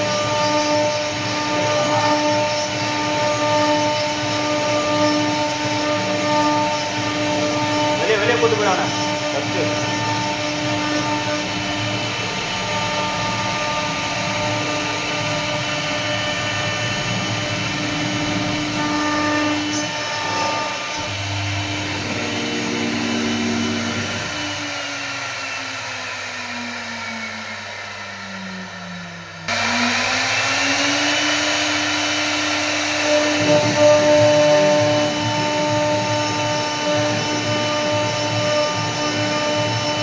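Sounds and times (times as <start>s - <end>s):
router spindle whining: 0.0s - 40.0s.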